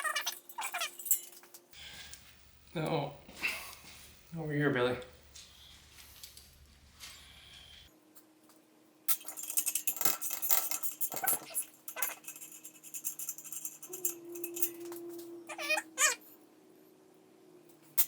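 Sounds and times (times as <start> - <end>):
metal tools clattering: 0.0 - 4.3, 9.1 - 15.2
faint steady hum: 1.8 - 7.9
wavering high squeal: 13.6 - 16.3.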